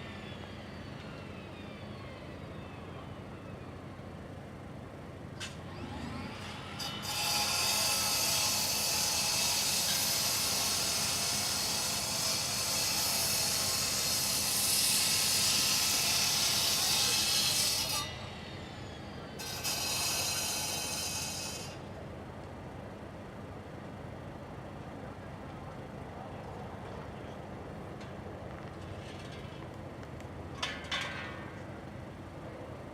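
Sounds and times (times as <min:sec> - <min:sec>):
construction equipment hissing: 0:05.7 - 0:21.9.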